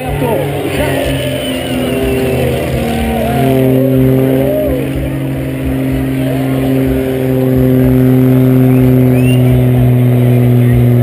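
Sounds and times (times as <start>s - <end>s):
propeller planes droning: 0.0s - 11.0s
whistle-like pitch glides: 0.8s - 5.1s, 7.6s - 11.0s.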